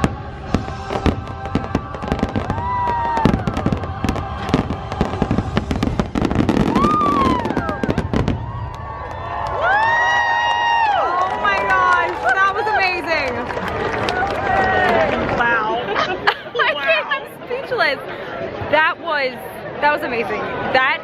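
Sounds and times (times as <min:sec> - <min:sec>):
fireworks banging and crackling: 0:00.0 - 0:10.0.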